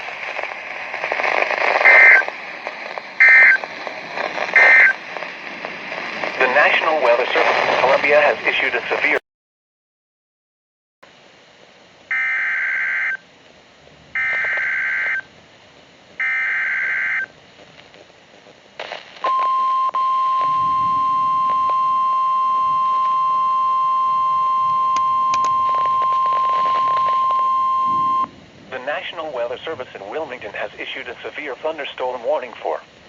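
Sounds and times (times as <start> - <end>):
buzzy data tone bursts: 1.2 - 2.5, 3.1 - 5.1, 14.2 - 15.3
steady single-pitch alert tone: 4.6 - 4.9, 19.3 - 28.3.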